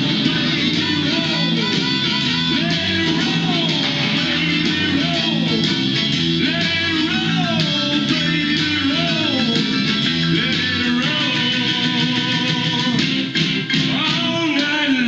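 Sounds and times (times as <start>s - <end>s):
guitar-led instrumental music: 0.0s - 15.0s.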